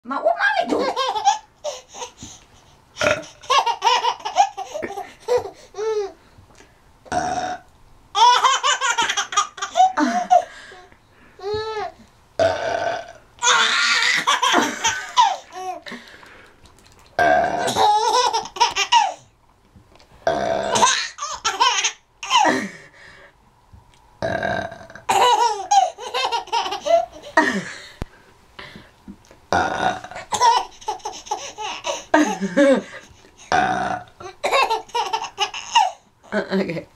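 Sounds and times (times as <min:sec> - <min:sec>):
baby laughing: 0:00.6 - 0:02.4, 0:03.2 - 0:06.2, 0:08.2 - 0:10.5, 0:13.4 - 0:15.9, 0:17.6 - 0:19.3, 0:20.7 - 0:22.7, 0:25.1 - 0:27.7, 0:30.3 - 0:33.1, 0:34.2 - 0:36.0
woman burping: 0:03.0 - 0:03.2, 0:07.1 - 0:07.6, 0:12.4 - 0:13.2, 0:17.2 - 0:17.9, 0:24.2 - 0:25.1, 0:29.5 - 0:30.3, 0:33.5 - 0:34.2.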